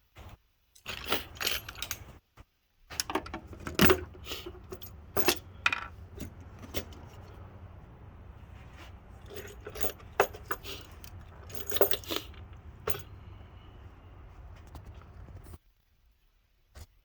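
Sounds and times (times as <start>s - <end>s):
metal tools clinking and rattling: 0.8s - 2.2s, 3.0s - 15.6s
low steady hum: 2.9s - 15.6s.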